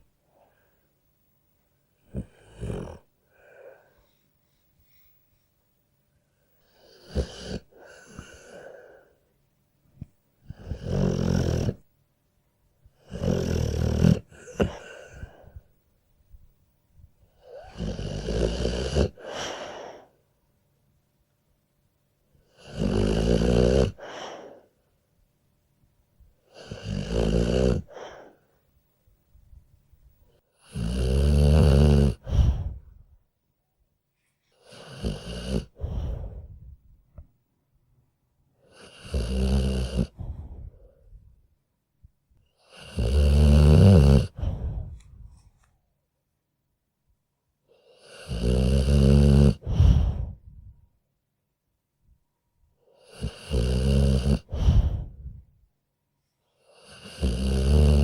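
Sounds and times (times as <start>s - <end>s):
dog snoring: 2.0s - 3.8s, 6.6s - 9.1s, 10.4s - 11.9s, 12.9s - 15.7s, 17.4s - 20.1s, 22.4s - 24.6s, 26.4s - 28.4s, 30.5s - 33.0s, 34.5s - 36.6s, 38.6s - 41.1s, 42.6s - 45.1s, 47.7s - 50.6s, 53.0s - 55.5s, 56.6s - 58.0s.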